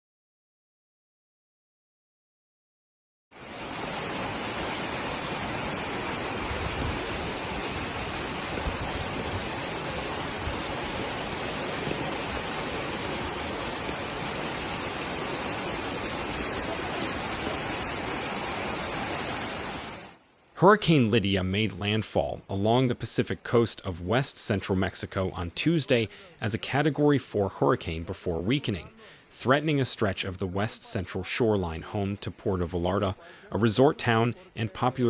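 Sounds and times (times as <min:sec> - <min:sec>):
rushing wind and water: 0:03.3 - 0:20.2.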